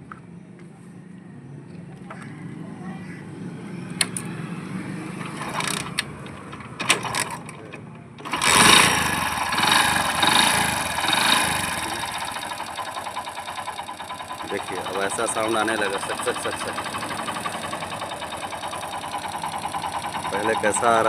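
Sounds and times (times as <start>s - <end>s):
motorcycle engine revving: 3.9s - 7.5s, 8.2s - 21.0s
sharp clicks: 4.0s - 4.3s
motorcycle engine running: 8.2s - 21.0s.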